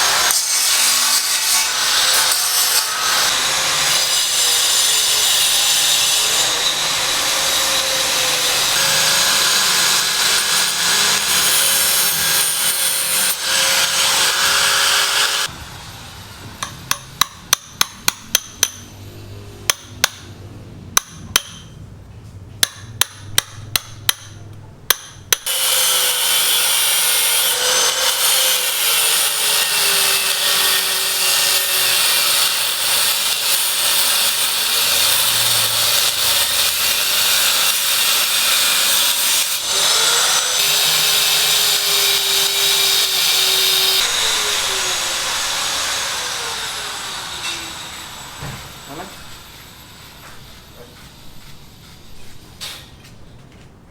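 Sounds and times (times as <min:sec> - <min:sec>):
power tool running: 0:01.4 - 0:17.1, 0:25.5 - 0:50.8
hammer strikes: 0:16.4 - 0:19.0, 0:19.6 - 0:20.4, 0:21.0 - 0:21.8, 0:22.6 - 0:28.5, 0:47.4 - 0:52.0.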